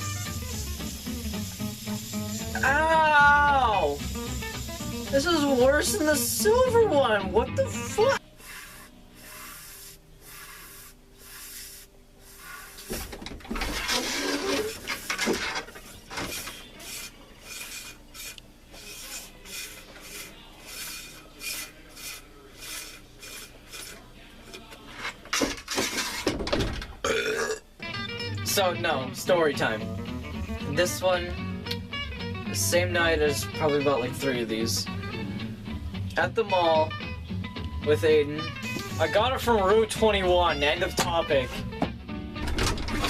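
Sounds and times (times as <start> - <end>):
fidget spinner rasping whir: 0.0 - 2.8, 8.2 - 26.2.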